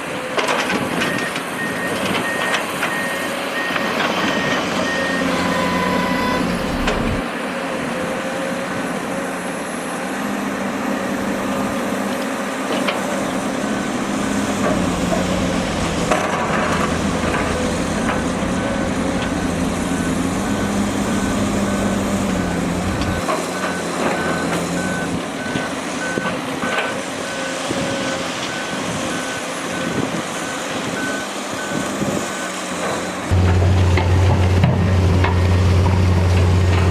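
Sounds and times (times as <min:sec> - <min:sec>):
diesel machinery running: 0:00.0 - 0:36.9
reversing alarm beeping: 0:01.0 - 0:07.2, 0:13.8 - 0:32.6.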